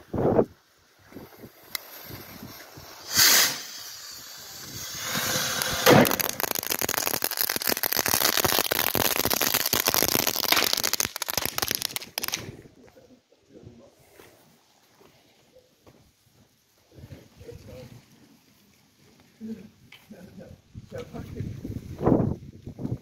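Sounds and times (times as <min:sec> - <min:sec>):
firework hiss: 0:01.2 - 0:12.6
rapid firework crackling: 0:01.5 - 0:12.6
firework bang: 0:03.0 - 0:12.5.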